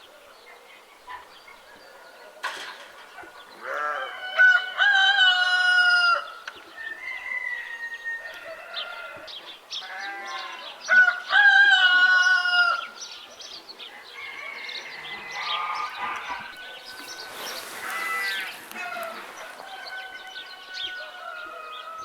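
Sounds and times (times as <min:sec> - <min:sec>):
farmyard bird calls and clucking: 0:00.0 - 0:22.0
rooster crowing: 0:03.8 - 0:09.3, 0:14.0 - 0:22.0.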